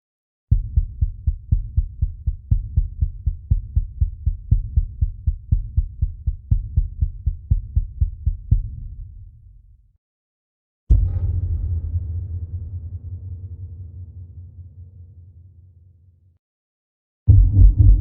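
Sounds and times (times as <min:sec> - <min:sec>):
heartbeat: 0:00.5 - 0:08.8, 0:17.3 - 0:18.0.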